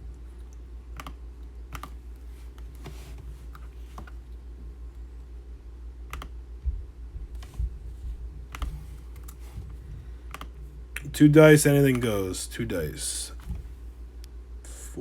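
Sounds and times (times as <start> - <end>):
steady low hum: 0.0 - 15.0
computer keyboard keys clicking: 1.0 - 2.0, 6.1 - 6.3
dull low thumps: 6.6 - 8.6.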